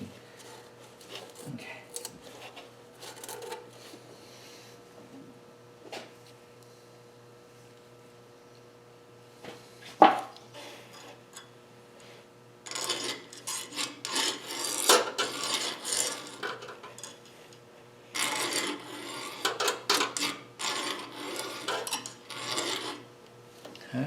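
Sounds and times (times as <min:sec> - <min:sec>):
metal file rasping: 0:12.7 - 0:16.5, 0:18.2 - 0:23.1.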